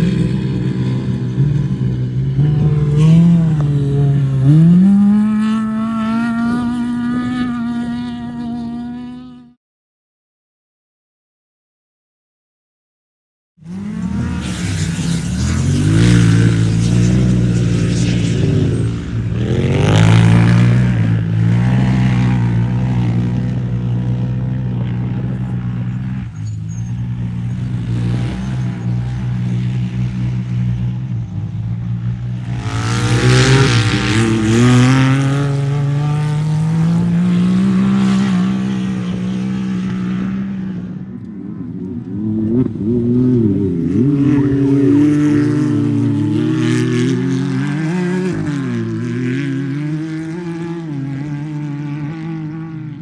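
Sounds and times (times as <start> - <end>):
race vehicle engine revving: 2.2 - 9.2.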